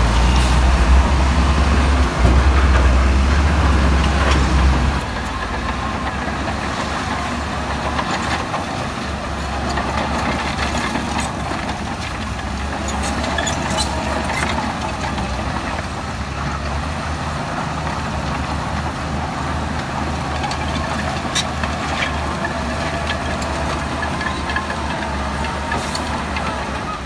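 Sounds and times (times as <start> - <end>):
heavy diesel machinery rumbling: 0.0 - 27.0.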